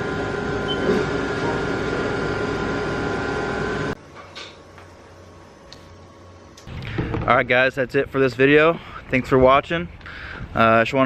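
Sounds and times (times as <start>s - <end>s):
shop machinery humming and whining: 0.0s - 6.7s.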